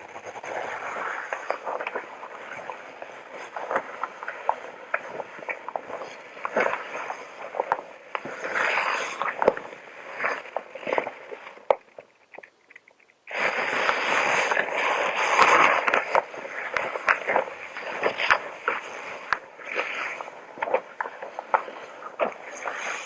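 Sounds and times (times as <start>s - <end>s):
hazmat suit rustling: 0.0s - 11.6s, 13.3s - 23.0s.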